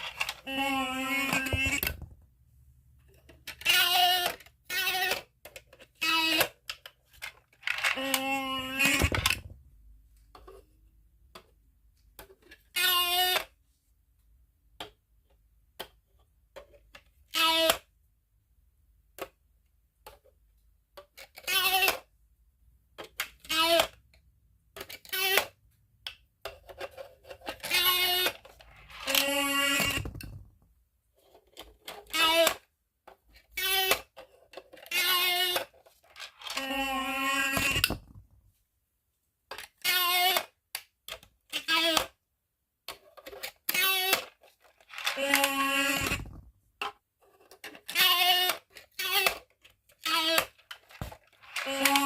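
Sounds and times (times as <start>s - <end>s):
electronic toy sound effects: 0.1s - 2.0s, 7.8s - 9.4s, 27.7s - 30.3s, 45.1s - 46.4s
toy voice-like sound effects: 0.1s - 2.0s, 3.5s - 5.3s, 7.7s - 9.4s, 12.7s - 13.5s, 17.3s - 17.9s, 21.3s - 22.1s, 24.8s - 25.5s, 27.6s - 30.3s, 36.4s - 38.0s, 39.8s - 40.5s, 41.5s - 42.2s, 43.7s - 46.3s, 47.8s - 49.4s, 51.5s - 52.0s
small plastic clicks: 3.0s - 9.5s, 22.9s - 30.6s, 39.5s - 42.2s, 42.8s - 52.0s
plastic toy clicks: 39.5s - 42.2s, 42.9s - 46.4s, 47.4s - 52.0s.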